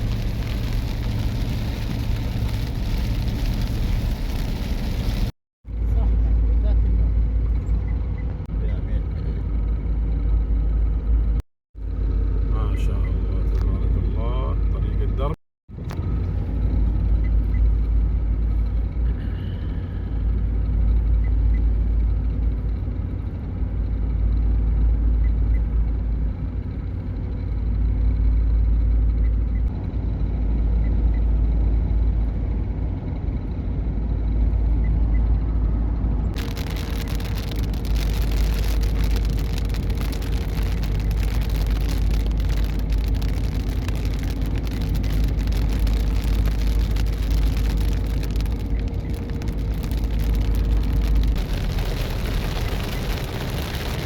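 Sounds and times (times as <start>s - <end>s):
car engine and road noise: 0.0s - 54.0s.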